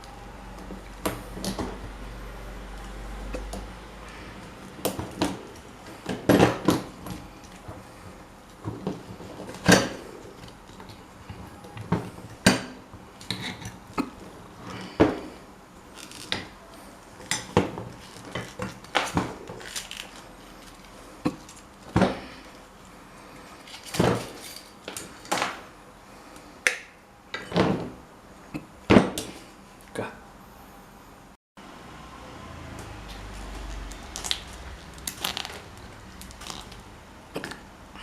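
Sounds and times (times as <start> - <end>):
metallic clinks and knocks: 23.6 - 25.4.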